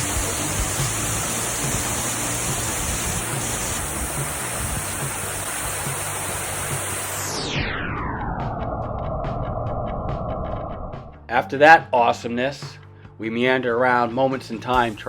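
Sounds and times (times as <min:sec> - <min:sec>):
waterfall rushing: 0:00.0 - 0:07.4.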